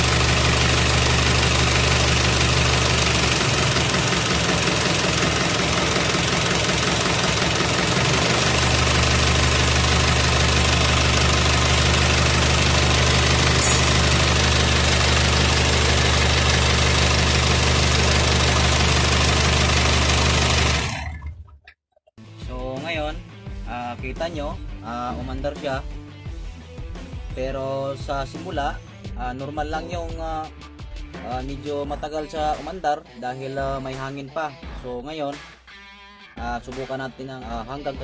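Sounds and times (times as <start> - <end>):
diesel engine idling: 0.0 - 21.2.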